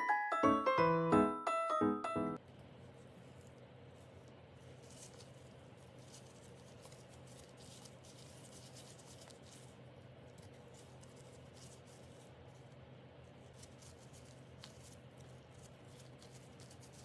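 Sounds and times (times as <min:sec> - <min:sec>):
air conditioner hum: 0:00.0 - 0:17.0
soft scratching and rustling: 0:02.5 - 0:17.0.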